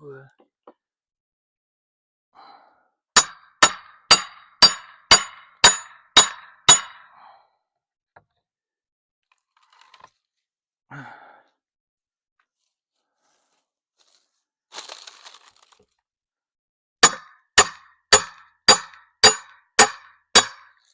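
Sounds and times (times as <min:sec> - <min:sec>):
metal tool hammering on metal: 0:03.2 - 0:07.1, 0:17.0 - 0:20.7.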